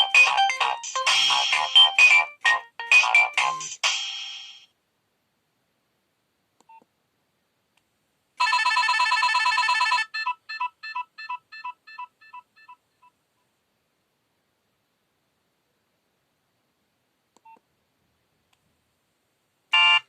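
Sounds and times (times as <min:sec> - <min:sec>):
fast electronic trill: 0:00.0 - 0:04.6
phone beeps: 0:08.4 - 0:12.8, 0:19.8 - 0:20.0.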